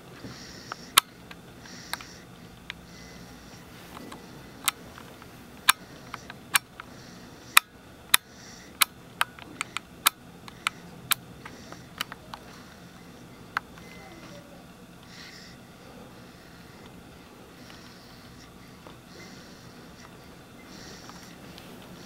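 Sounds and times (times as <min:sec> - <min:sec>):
sharp irregular clicks: 0:00.6 - 0:02.9, 0:03.5 - 0:14.0
light snoring: 0:10.5 - 0:22.0.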